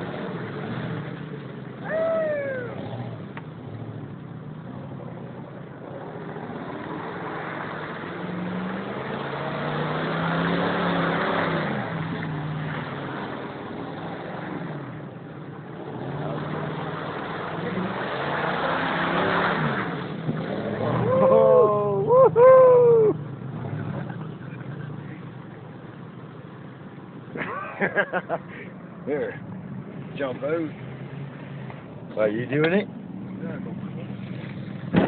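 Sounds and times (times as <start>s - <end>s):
pickup truck engine revving: 5.9s - 28.6s.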